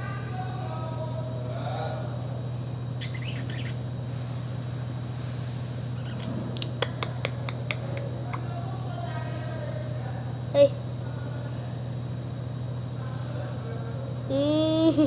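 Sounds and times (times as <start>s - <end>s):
steady low hum: 0.0s - 15.0s
parrots chirping: 2.9s - 4.0s, 5.8s - 8.5s.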